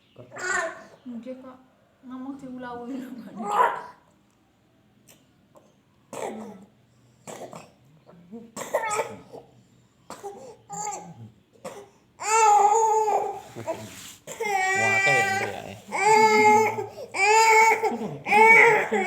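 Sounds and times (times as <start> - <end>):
baby coughing and fussing: 6.1 - 6.7, 7.3 - 7.8, 8.6 - 9.5, 10.1 - 19.0
baby crying loudly: 14.4 - 19.0.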